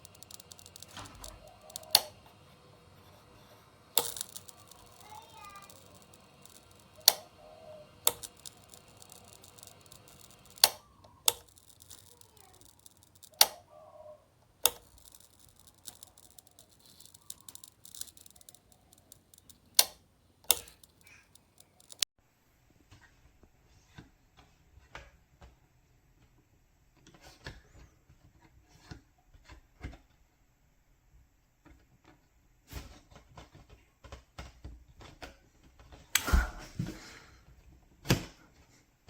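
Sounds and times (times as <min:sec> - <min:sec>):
light switch clicking: 0:00.0 - 0:02.3, 0:04.0 - 0:13.7, 0:14.6 - 0:22.0.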